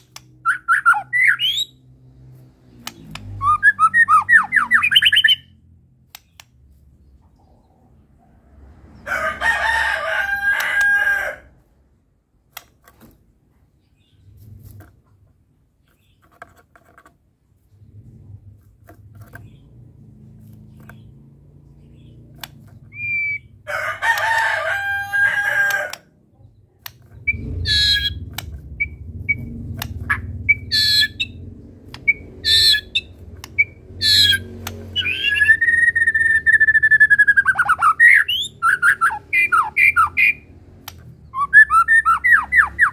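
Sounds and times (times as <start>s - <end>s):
bird whistled notes and chips: 0.4s - 1.8s, 3.4s - 5.5s, 22.9s - 23.5s, 27.2s - 31.4s, 32.0s - 40.4s, 41.3s - 42.9s
bird crowing calls: 9.0s - 11.6s, 22.9s - 26.2s, 32.1s - 40.4s
low hum: 26.4s - 42.9s.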